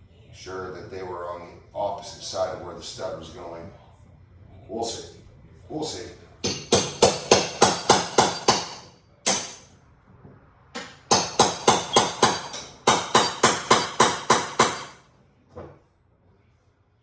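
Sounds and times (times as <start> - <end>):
hammer striking metal nail puller: 10.8 - 15.0.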